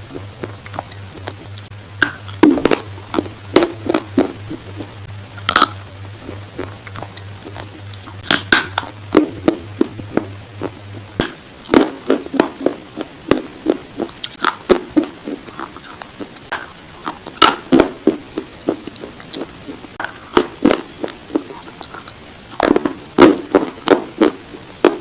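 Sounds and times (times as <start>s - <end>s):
dry clay being chewed crunching: 0.0s - 25.0s
low hum: 0.0s - 25.0s.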